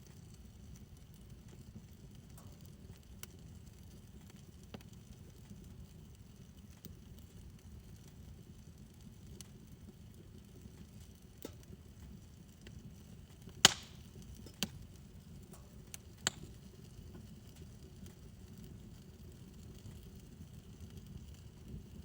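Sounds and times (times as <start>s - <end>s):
wood fire crackling: 0.0s - 22.0s
sharp pops of fire: 6.4s - 21.9s.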